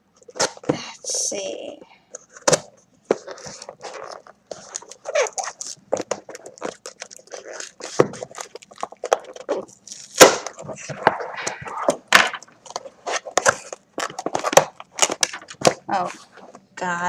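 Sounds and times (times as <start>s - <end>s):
packing tape tearing on cardboard box: 2.4s - 12.4s.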